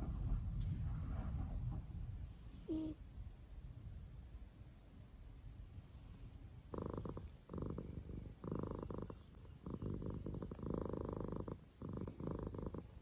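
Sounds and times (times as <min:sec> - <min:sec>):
cat snoring: 0:02.4 - 0:03.0, 0:06.0 - 0:13.0.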